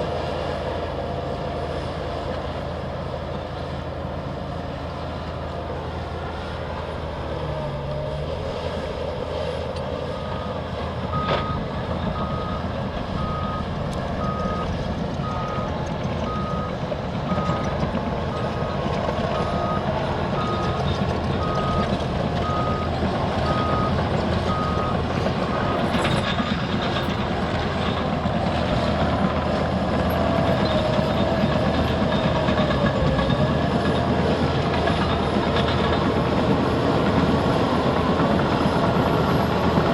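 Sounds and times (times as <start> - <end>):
bulldozer diesel engines droning: 0.0 - 39.9
reversing alarm beeping: 10.1 - 28.1.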